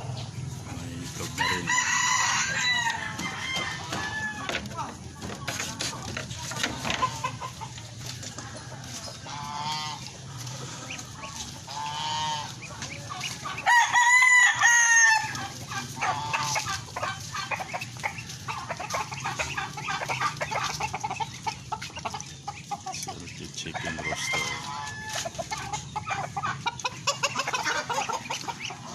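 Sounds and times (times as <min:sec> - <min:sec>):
chickens clucking: 0:00.0 - 0:28.9
rooster crowing: 0:01.2 - 0:04.8, 0:13.6 - 0:16.6, 0:23.7 - 0:25.4.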